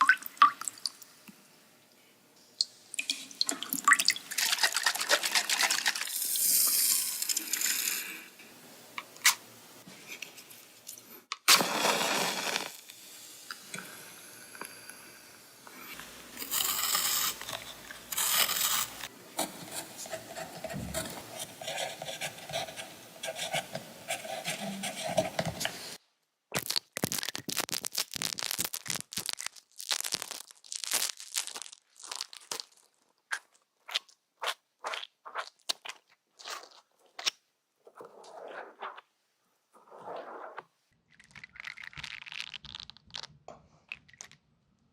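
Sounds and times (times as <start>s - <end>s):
scraping noises: 16.4s - 26.0s, 39.8s - 40.8s
crinkly clicks and crackles: 26.6s - 33.6s, 41.1s - 44.5s.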